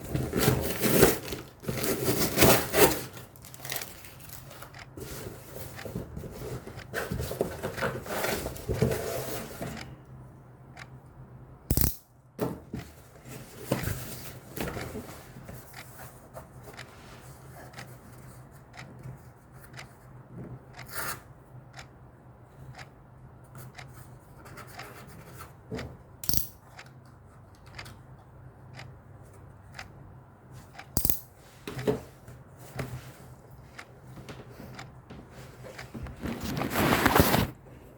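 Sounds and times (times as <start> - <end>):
packaging rustling: 0.0 - 5.2, 36.0 - 37.6.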